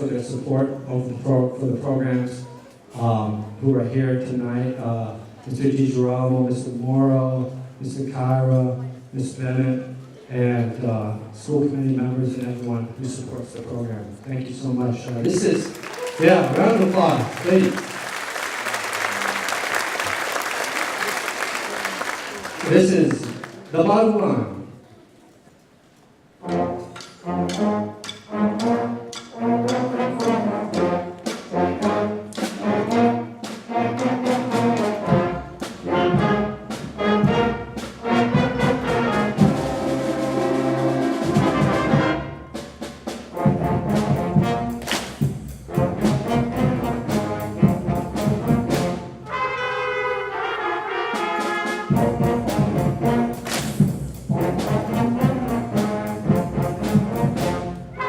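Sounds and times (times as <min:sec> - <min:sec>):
concert band playing: 0:14.4 - 0:23.9, 0:26.4 - 0:58.0
trombones carrying melody: 0:26.4 - 0:58.0.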